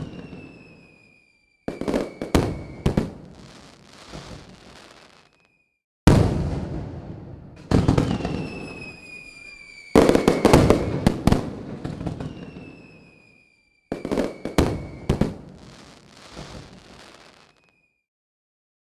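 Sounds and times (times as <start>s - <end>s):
fireworks bangs with rumble: 0.0s - 0.6s, 1.7s - 4.8s, 6.1s - 9.2s, 9.9s - 13.0s, 13.9s - 17.0s
high falling whistles: 0.0s - 3.0s, 7.8s - 15.3s
fireworks crackling: 0.0s - 5.6s, 6.2s - 17.8s.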